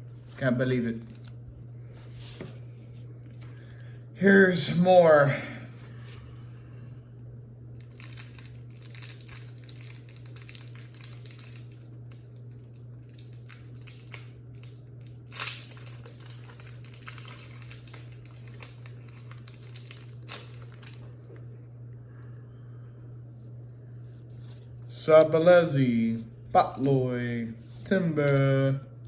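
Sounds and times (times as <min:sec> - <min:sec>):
steady low hum: 0:00.0 - 0:29.0
foil wrapper crinkling and tearing: 0:07.8 - 0:21.5.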